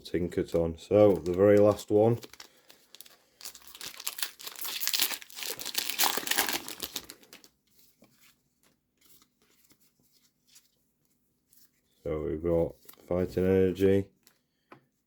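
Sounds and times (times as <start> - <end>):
foil wrapper crinkling and tearing: 1.0 - 7.6.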